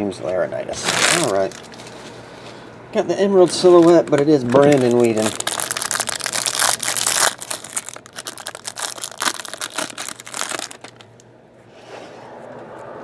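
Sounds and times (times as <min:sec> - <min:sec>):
wrapping crinkling and tearing: 0:00.7 - 0:02.1, 0:03.4 - 0:11.2.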